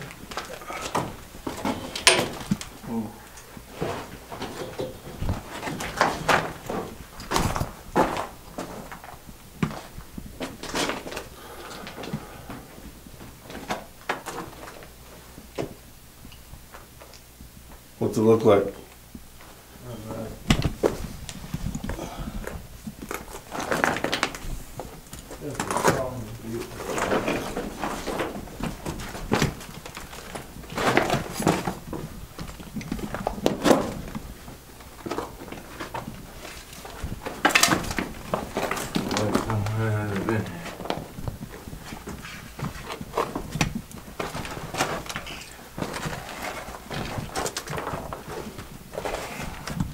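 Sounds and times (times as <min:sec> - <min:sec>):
footsteps crunching on loose rock: 0:03.6 - 0:11.3, 0:20.4 - 0:49.9.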